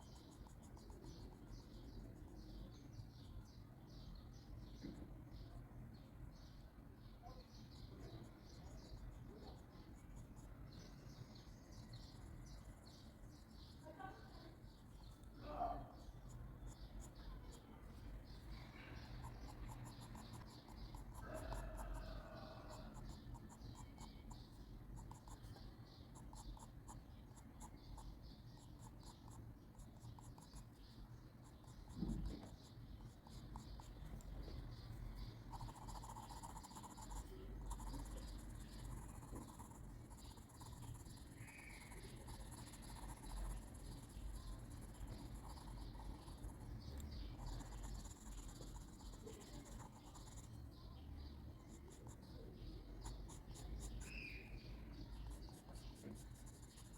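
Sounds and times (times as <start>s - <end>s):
pencil scratching on paper: 0.0s - 2.7s, 16.0s - 50.6s, 51.5s - 54.3s, 54.9s - 56.9s
thump: 32.0s - 32.4s.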